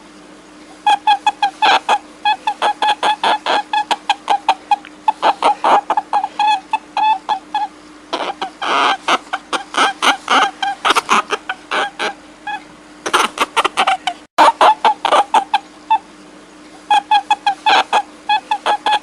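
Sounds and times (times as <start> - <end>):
faint steady hum: 0.0 - 19.0
small animal squeaking: 0.8 - 16.1, 16.8 - 19.0.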